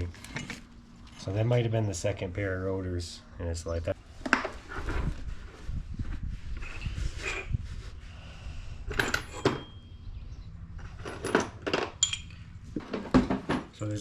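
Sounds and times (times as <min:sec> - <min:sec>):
metal parts clinking and rattling: 0:00.1 - 0:01.3, 0:08.9 - 0:09.9, 0:10.8 - 0:13.1.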